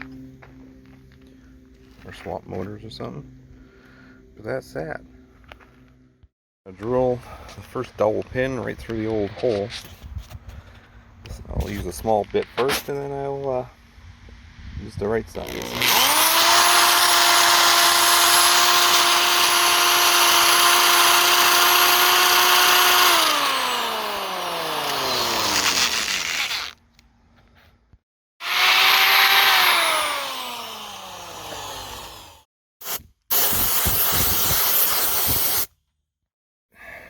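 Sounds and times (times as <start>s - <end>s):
electric drill whining: 15.4s - 26.8s, 28.4s - 35.4s
loud drilling noise: 15.4s - 26.8s, 28.4s - 35.7s.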